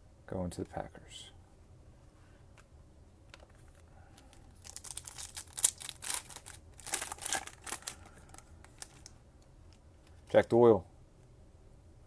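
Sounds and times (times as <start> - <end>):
trading card packaging rustling: 3.4 - 9.1.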